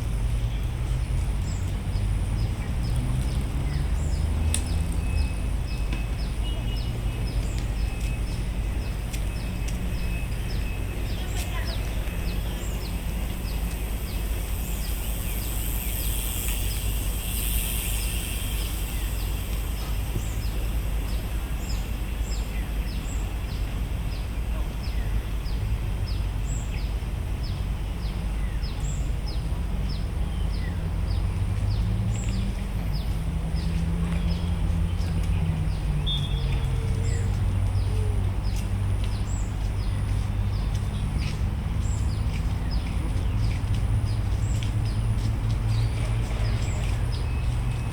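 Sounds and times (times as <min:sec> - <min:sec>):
low droning hum: 0:07.3 - 0:25.6.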